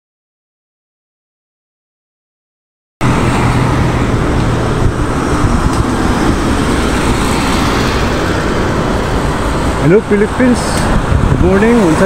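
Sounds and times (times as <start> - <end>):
engine hum: 3.0 - 12.0
road traffic noise: 3.0 - 12.0.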